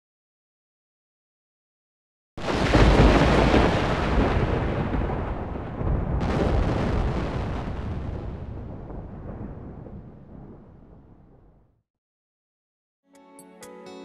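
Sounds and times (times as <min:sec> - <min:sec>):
thunder clap and rumble: 0:02.4 - 0:11.8.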